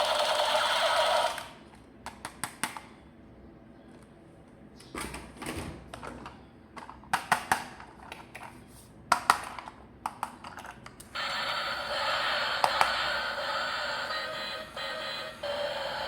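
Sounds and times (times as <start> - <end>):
steady electronic toy sound: 11.2 - 16.0.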